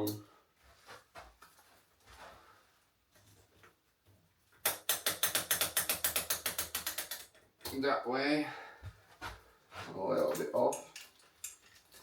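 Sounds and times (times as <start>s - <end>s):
bicycle freewheel ratcheting: 4.7s - 7.4s.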